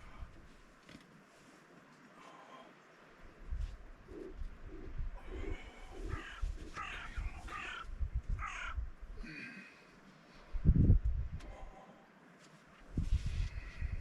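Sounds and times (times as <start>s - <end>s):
soft low crow calls: 2.1s - 10.4s
crow cawing: 6.0s - 9.5s.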